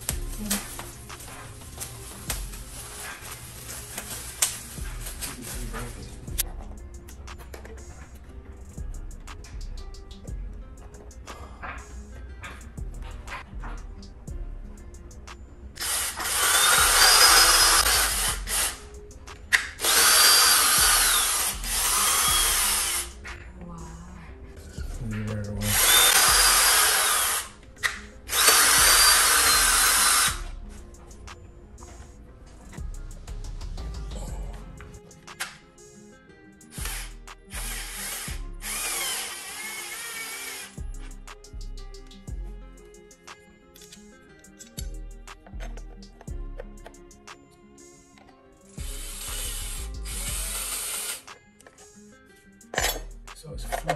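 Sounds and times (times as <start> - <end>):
music with steady beat: 0.0 - 53.9
power drill whine: 15.8 - 18.8, 19.8 - 23.1, 25.7 - 27.5, 28.3 - 30.4, 36.8 - 40.8, 48.9 - 51.2.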